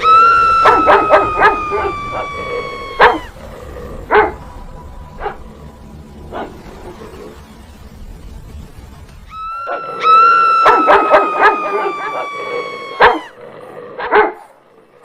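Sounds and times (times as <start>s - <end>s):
sharp yelps: 0.0s - 3.4s, 9.3s - 13.4s
animal howling: 0.0s - 7.4s, 9.3s - 14.4s.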